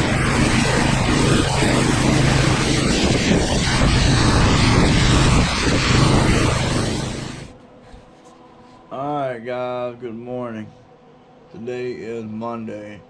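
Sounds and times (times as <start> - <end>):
pressure washer engine hum: 0.0 - 7.5
water spray hissing: 0.0 - 7.5.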